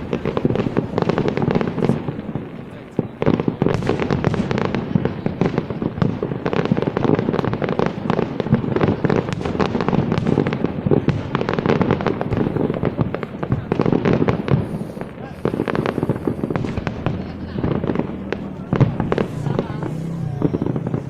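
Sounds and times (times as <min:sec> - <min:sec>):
fireworks bangs and crackles: 0:00.0 - 0:21.0
steady rumble: 0:12.1 - 0:21.0.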